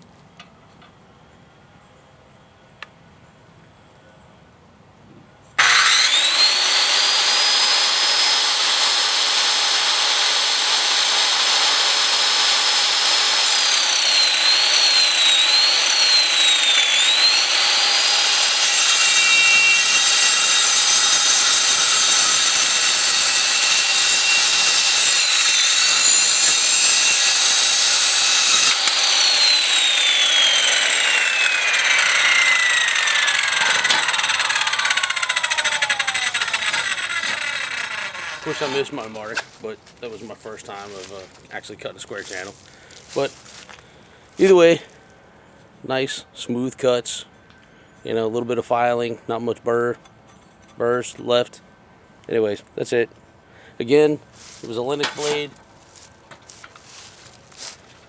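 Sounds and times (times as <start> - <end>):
circular saw cutting steel: 5.6 - 41.2, 54.4 - 55.6.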